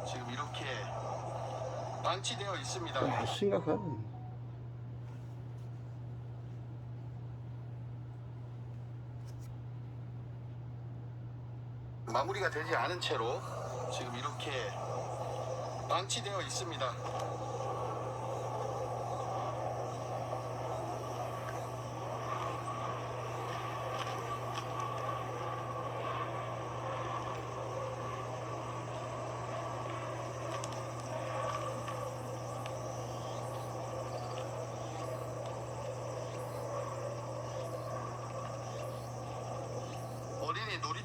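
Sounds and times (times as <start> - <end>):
steady low hum: 0.0 - 41.0
faint high chirps: 12.2 - 41.0.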